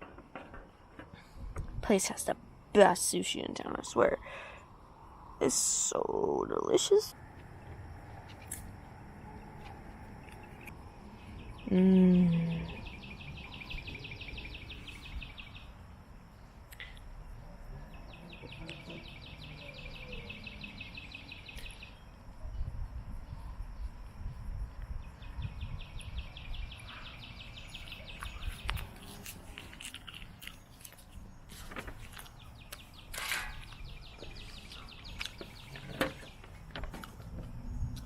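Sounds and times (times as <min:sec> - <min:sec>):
insects trilling: 0:00.0 - 0:38.0
person eating clicks and smacks: 0:28.2 - 0:31.0.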